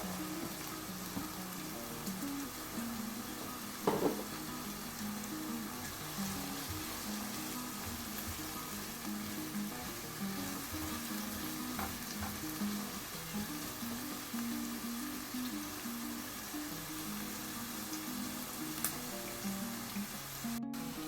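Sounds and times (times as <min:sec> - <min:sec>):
food sizzling in a frying pan: 0:00.0 - 0:21.0
quiet background music: 0:00.0 - 0:21.0
utensil knocking on pan: 0:03.8 - 0:04.4, 0:11.7 - 0:12.6.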